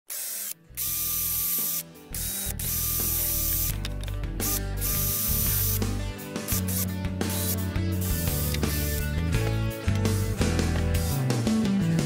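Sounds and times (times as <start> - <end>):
scroll saw cutting wood: 0.1 - 3.7.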